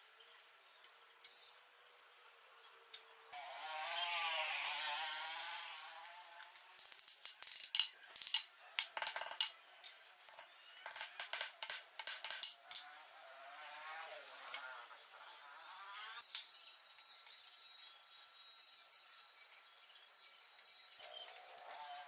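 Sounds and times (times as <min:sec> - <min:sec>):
metallic clicks and clinks: 0:06.8 - 0:12.9.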